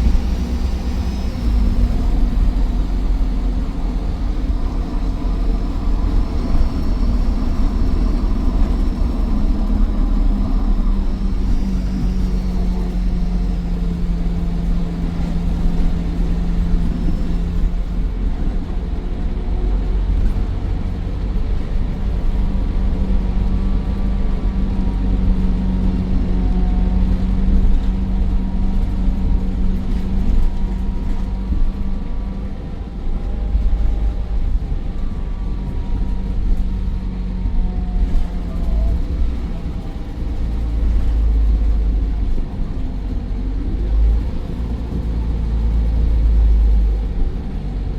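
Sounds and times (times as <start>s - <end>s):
turbo whine: 0.0s - 20.5s
bus diesel engine rumble: 0.0s - 47.9s.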